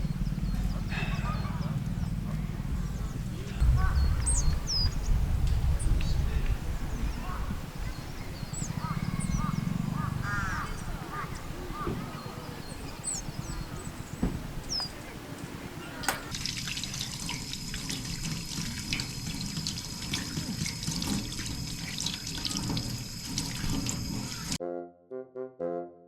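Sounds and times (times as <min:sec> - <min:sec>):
running water splashing: 0:00.0 - 0:24.6
background music with brass: 0:24.6 - 0:26.0.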